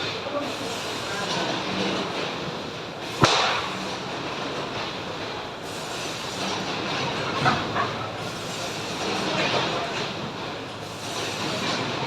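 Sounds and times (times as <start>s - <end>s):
industrial machinery noise: 0.0s - 12.0s
sharp loud crack: 3.2s - 3.9s.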